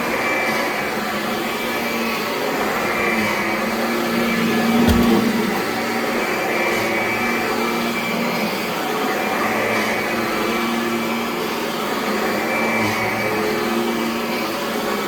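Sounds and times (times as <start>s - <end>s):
thump: 4.8s - 5.7s.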